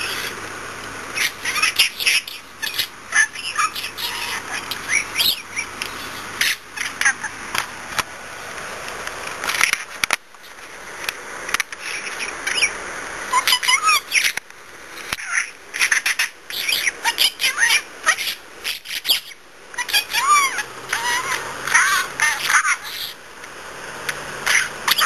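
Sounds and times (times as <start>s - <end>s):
budgerigar chirping and warbling: 0.0s - 0.4s, 1.1s - 7.4s, 11.8s - 14.4s, 15.2s - 23.2s, 24.4s - 25.0s.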